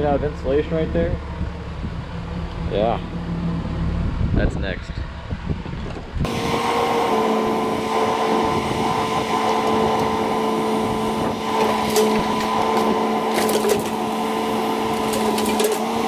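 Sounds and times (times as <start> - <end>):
excavator engine and hydraulics whine: 0.0 - 16.0
wood cracking and snapping: 11.2 - 16.0.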